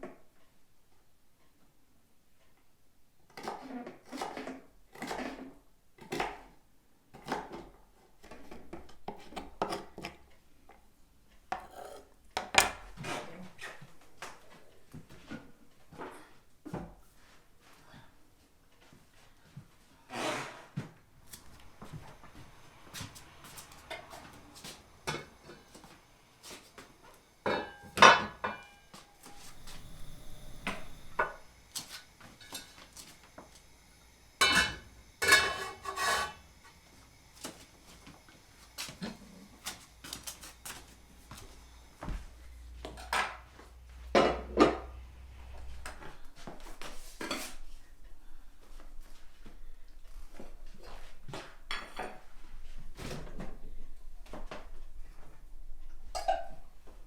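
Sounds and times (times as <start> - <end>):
dishes and pots clattering: 11.5 - 13.3, 27.4 - 29.7, 32.4 - 33.1, 34.4 - 36.5, 44.1 - 45.0, 47.2 - 47.6, 51.4 - 52.4, 56.0 - 56.8.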